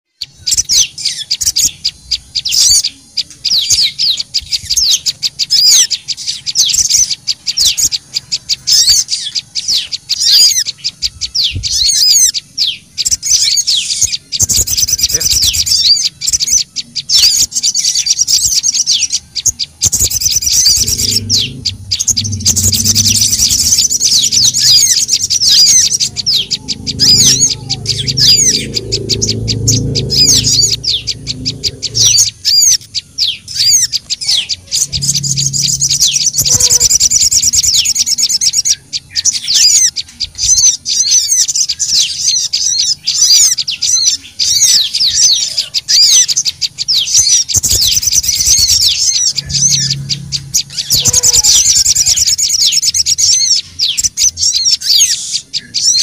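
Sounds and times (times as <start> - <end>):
songbirds chirping and trilling: 0.1 - 56.0
low rumble: 19.9 - 37.6, 47.6 - 52.3.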